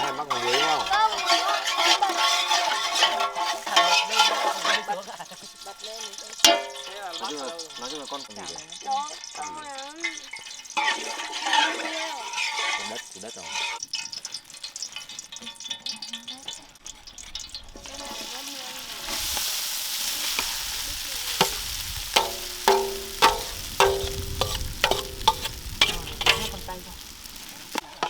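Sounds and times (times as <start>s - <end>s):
metal spatula knocking on pan: 0.0s - 8.2s, 21.2s - 28.0s
food sizzling in a pan: 0.0s - 28.0s.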